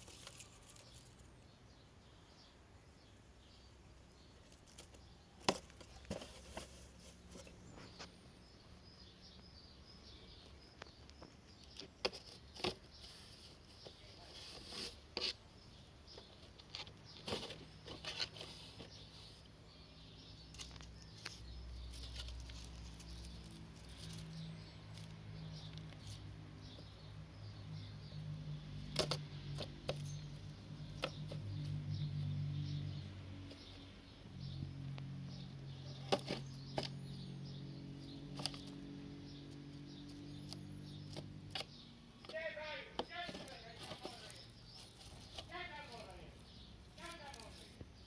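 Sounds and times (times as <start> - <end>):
kitten scratching cardboard box: 4.4 - 8.1, 11.6 - 19.6, 35.5 - 42.4, 43.0 - 46.2.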